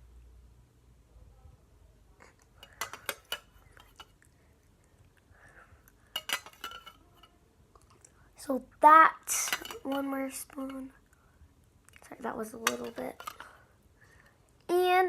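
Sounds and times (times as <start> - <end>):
spoon clinking against container: 2.6 - 4.1, 6.2 - 7.3, 9.4 - 10.0.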